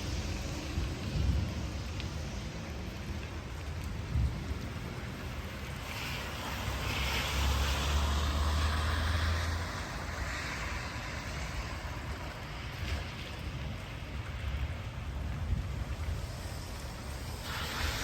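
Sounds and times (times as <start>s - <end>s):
rain falling: 0.0s - 18.0s.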